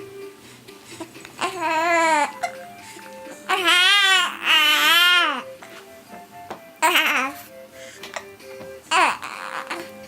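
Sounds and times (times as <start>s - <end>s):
baby crying: 1.4s - 2.6s, 3.3s - 5.5s, 6.8s - 7.4s, 8.9s - 10.0s.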